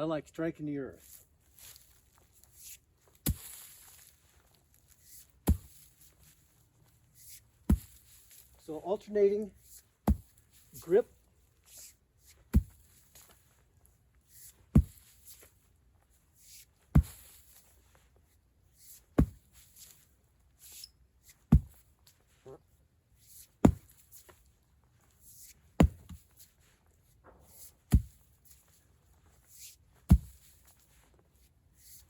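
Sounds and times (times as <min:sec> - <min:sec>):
sledgehammer thudding on earth: 0:03.2 - 0:04.0, 0:05.4 - 0:05.9, 0:07.7 - 0:08.4, 0:10.0 - 0:10.4, 0:12.5 - 0:13.2, 0:14.7 - 0:15.3, 0:16.9 - 0:17.4, 0:19.2 - 0:19.6, 0:21.5 - 0:21.9, 0:23.6 - 0:24.2, 0:25.8 - 0:26.2, 0:27.3 - 0:28.3, 0:30.1 - 0:30.6.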